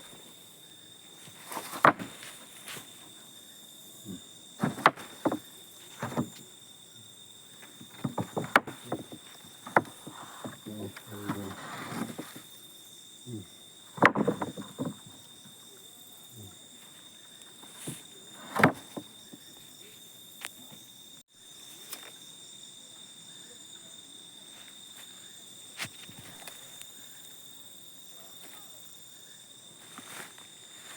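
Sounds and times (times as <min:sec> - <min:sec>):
knocks: 0:07.8 - 0:10.6, 0:14.0 - 0:15.2.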